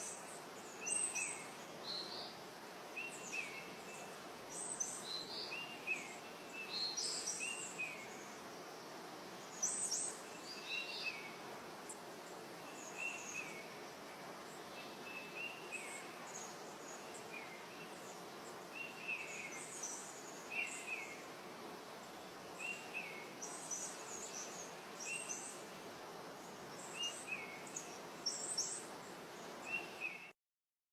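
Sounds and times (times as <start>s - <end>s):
outdoor background hiss: 0.0s - 30.4s
bird chirping: 14.6s - 21.3s, 22.6s - 25.6s.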